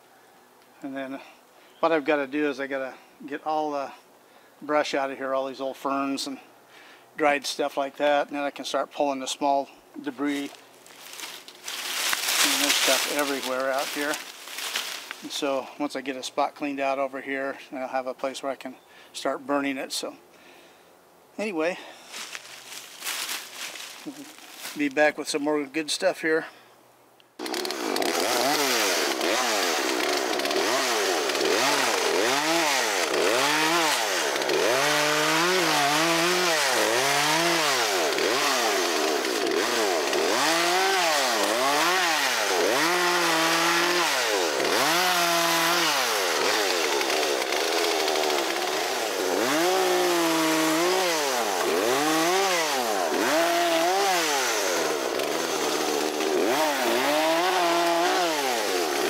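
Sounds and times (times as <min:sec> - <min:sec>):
chainsaw revving: 0:10.4 - 0:15.3, 0:27.4 - 0:59.0.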